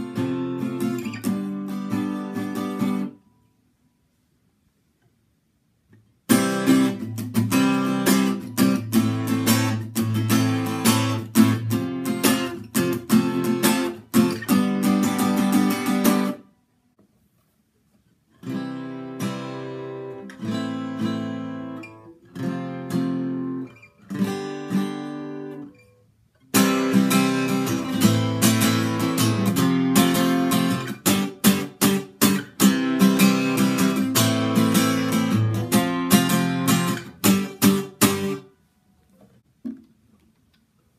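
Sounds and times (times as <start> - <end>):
acoustic guitar strummed chords: 0.0 - 3.4, 6.3 - 16.5, 18.4 - 25.9, 26.5 - 38.6.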